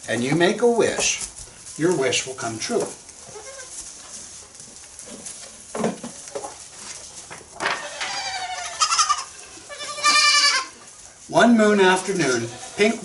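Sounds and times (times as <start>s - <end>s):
goat bleating: 3.2s - 3.8s, 7.6s - 10.8s, 11.9s - 13.0s.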